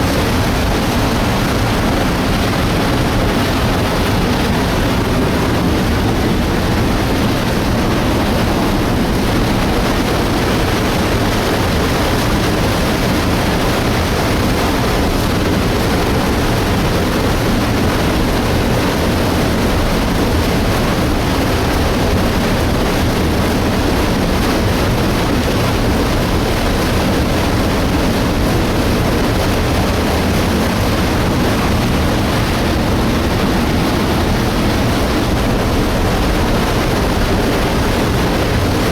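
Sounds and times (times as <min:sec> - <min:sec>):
rushing mud water and rock: 0:00.0 - 0:38.9.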